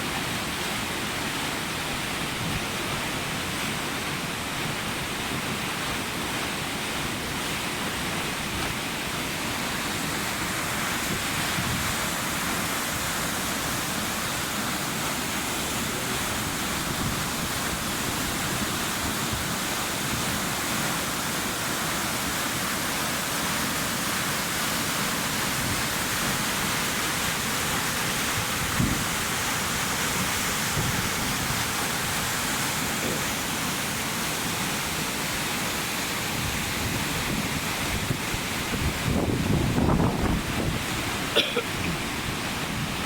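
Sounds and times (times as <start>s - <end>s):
water rushing through weir: 0.0s - 43.0s
wind rumble on microphone: 11.0s - 12.0s, 28.4s - 29.2s, 30.7s - 31.4s, 36.4s - 41.1s.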